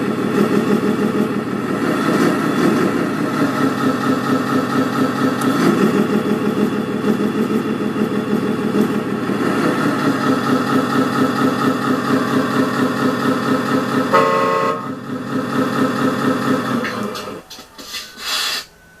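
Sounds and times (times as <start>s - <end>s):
simulated diesel engine idling: 0.0s - 18.4s
truck horn toot: 14.0s - 15.0s.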